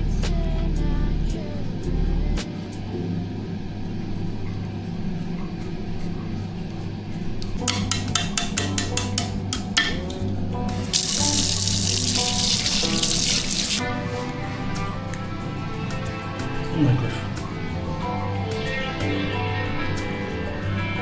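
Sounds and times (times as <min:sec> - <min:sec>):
background music: 0:00.0 - 0:04.2, 0:07.5 - 0:21.0
water running hard: 0:10.8 - 0:13.8.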